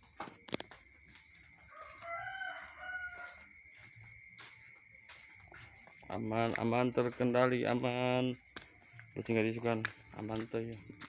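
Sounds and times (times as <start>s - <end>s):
rooster crowing: 1.6s - 3.6s.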